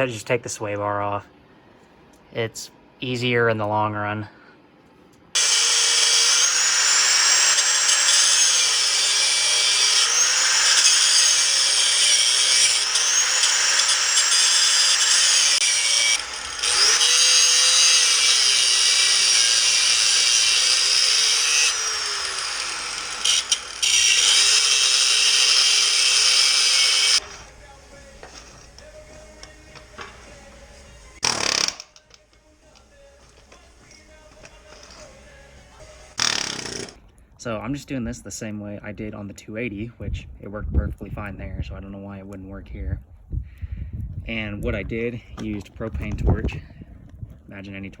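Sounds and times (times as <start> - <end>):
power tool cutting metal: 5.4 - 37.0.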